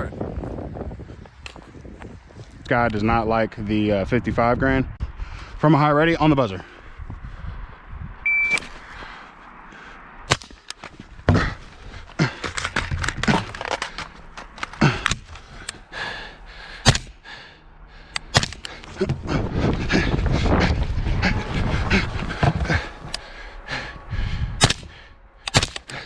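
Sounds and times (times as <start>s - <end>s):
shot timer beep: 8.3s - 8.6s
rifle shots: 24.6s - 25.9s.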